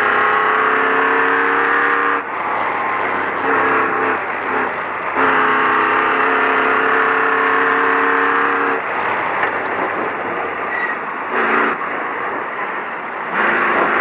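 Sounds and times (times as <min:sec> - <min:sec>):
truck engine and road noise: 0:00.0 - 0:14.0
vehicle horn honking: 0:00.1 - 0:02.3, 0:03.1 - 0:08.8, 0:10.7 - 0:11.8.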